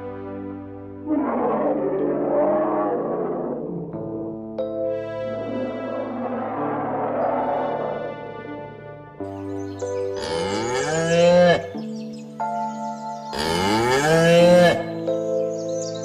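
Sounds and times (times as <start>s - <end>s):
background music with held notes: 0.0s - 16.0s
cow mooing: 10.2s - 11.8s, 13.4s - 15.0s.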